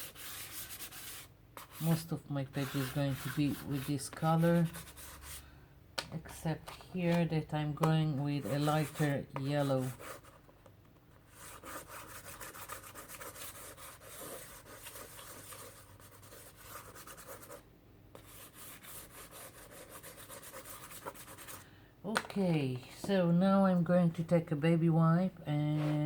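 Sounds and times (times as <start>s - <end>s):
pastel scratchy rubbing on paper: 0.0s - 5.4s, 8.4s - 10.4s, 11.3s - 17.6s, 18.2s - 21.6s.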